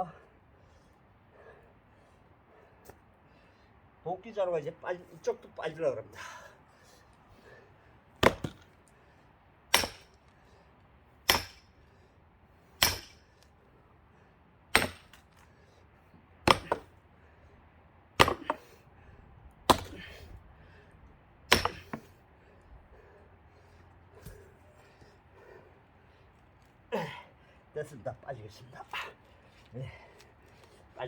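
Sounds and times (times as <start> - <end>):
heavy blows into a log: 19.7 - 20.3, 21.5 - 22.1.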